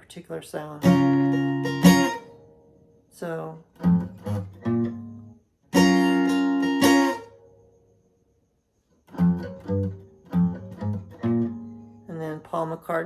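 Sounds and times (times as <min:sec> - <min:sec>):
guitar chord strummed: 0:00.8 - 0:02.3, 0:03.8 - 0:07.4
guitar picked notes: 0:00.8 - 0:02.6, 0:03.8 - 0:07.5, 0:09.1 - 0:12.4.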